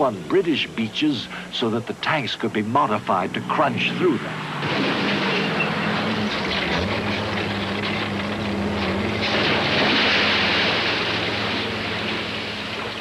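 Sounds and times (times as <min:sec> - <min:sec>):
heavy engine droning: 0:00.0 - 0:13.0
loud noisy rush: 0:02.6 - 0:13.0.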